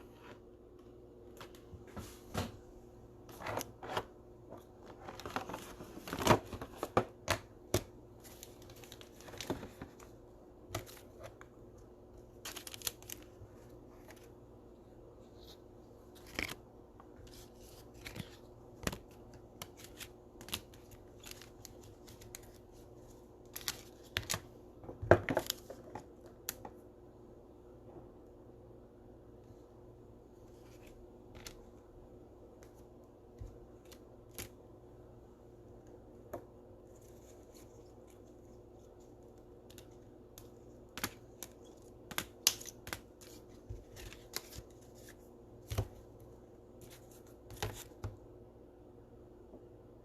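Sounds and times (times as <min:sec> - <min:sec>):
cards clicking and rustling in plastic: 0:04.9 - 0:11.5, 0:12.2 - 0:14.3, 0:17.3 - 0:24.6, 0:37.0 - 0:46.0.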